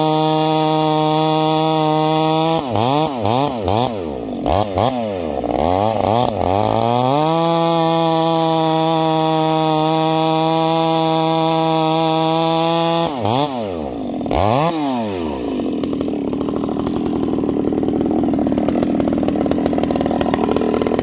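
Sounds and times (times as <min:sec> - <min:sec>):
chainsaw revving: 0:00.0 - 0:21.0.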